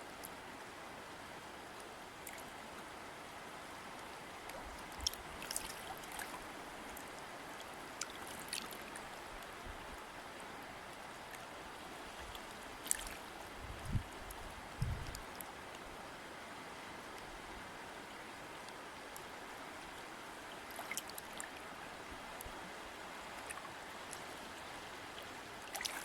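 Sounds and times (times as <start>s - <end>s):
stream flowing over stones: 0.0s - 26.0s
small splashes and drips: 2.2s - 2.5s, 4.4s - 9.5s, 12.1s - 15.8s, 20.6s - 21.6s, 23.3s - 26.0s.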